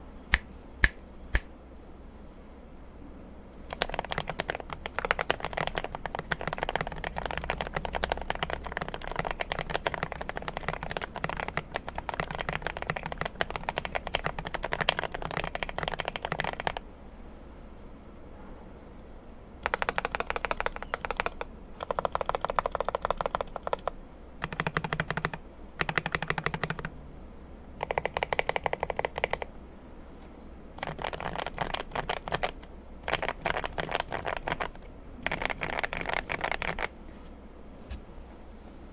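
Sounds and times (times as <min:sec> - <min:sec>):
mechanical keyboard typing: 0:03.6 - 0:16.8, 0:19.6 - 0:26.9, 0:27.8 - 0:29.5, 0:30.8 - 0:36.9.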